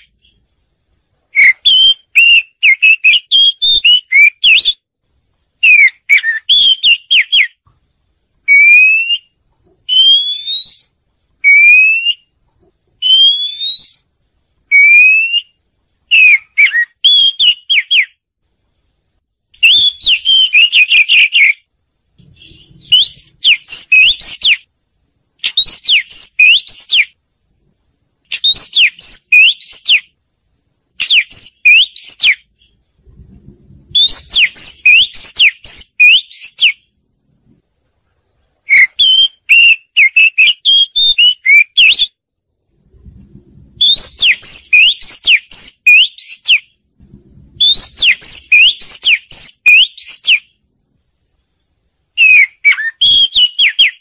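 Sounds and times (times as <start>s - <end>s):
bird singing whistles and warbles: 1.3s - 4.9s, 5.6s - 7.7s, 8.4s - 12.4s, 13.0s - 14.1s, 14.7s - 18.2s, 19.6s - 24.7s, 25.4s - 27.2s, 28.3s - 30.2s, 31.0s - 32.8s, 33.8s - 36.9s, 38.6s - 42.2s, 43.8s - 46.8s, 47.5s - 50.6s, 52.2s - 54.0s.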